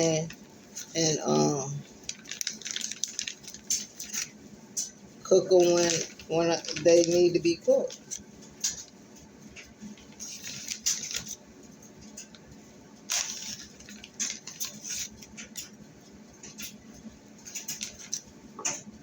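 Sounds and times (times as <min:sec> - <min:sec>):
rustling: 0:00.7 - 0:04.3, 0:10.0 - 0:11.4, 0:13.1 - 0:15.4.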